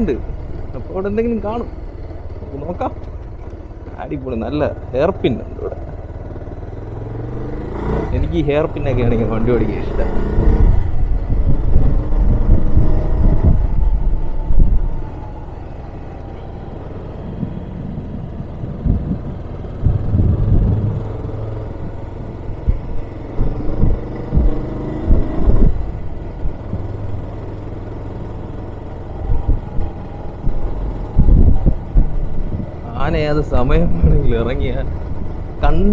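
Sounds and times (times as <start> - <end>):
motorcycle engine running: 0.0 - 35.9
wind rumbling on microphone: 7.2 - 35.9.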